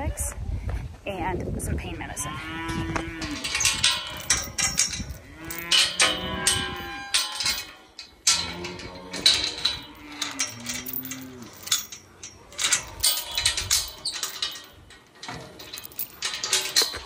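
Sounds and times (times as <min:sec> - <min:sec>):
knocks and rattles: 0:03.0 - 0:17.0
cattle mooing: 0:08.3 - 0:11.6.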